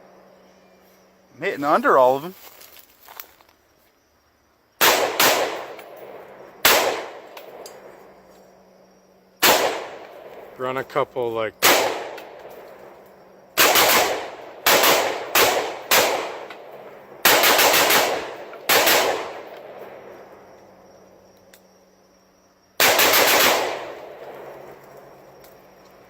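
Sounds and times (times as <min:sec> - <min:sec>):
rifle shots echoing: 0:04.8 - 0:07.9, 0:09.4 - 0:10.8, 0:11.6 - 0:13.0, 0:13.6 - 0:20.2, 0:22.8 - 0:24.9.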